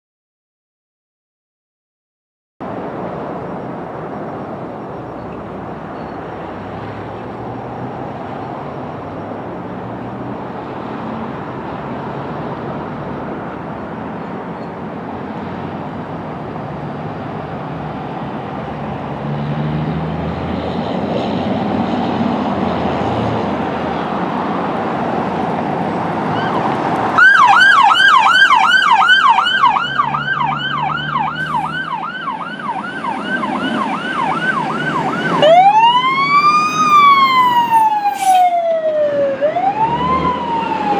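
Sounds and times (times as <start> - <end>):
vehicle engines rumbling: 2.6 - 40.9
electronic siren yelping: 26.3 - 40.9.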